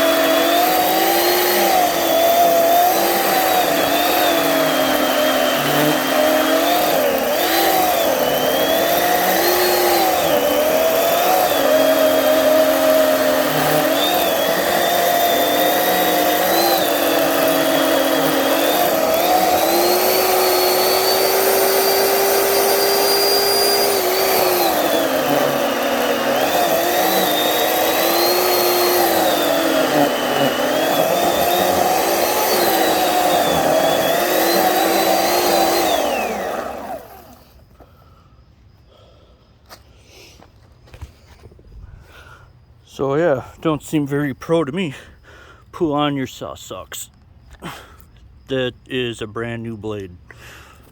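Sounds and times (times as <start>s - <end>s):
electric chainsaw cutting wood: 0.0s - 37.7s.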